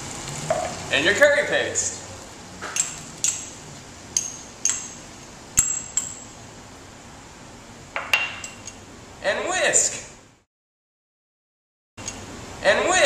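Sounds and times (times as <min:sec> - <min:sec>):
faint sizzling in pan: 0:00.0 - 0:10.1.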